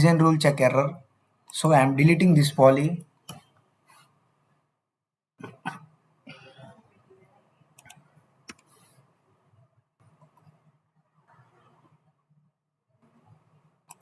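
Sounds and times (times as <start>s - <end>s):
faint low room noise: 0.0s - 14.0s
mouse and keyboard clicks: 7.8s - 8.9s.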